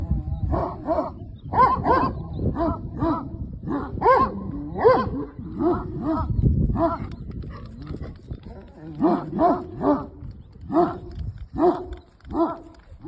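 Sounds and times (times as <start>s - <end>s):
dog barking: 0.5s - 7.0s, 9.0s - 10.1s, 11.6s - 12.6s.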